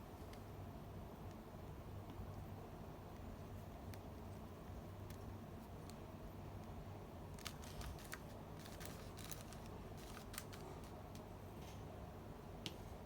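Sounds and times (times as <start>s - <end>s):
low steady hum: 0.0s - 13.0s
packaging clicks and crackles: 7.3s - 11.3s.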